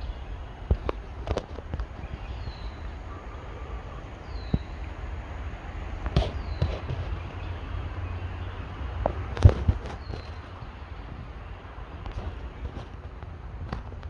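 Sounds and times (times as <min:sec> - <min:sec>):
footsteps on a trail: 0:00.0 - 0:14.0
low wind rumble: 0:00.0 - 0:14.0.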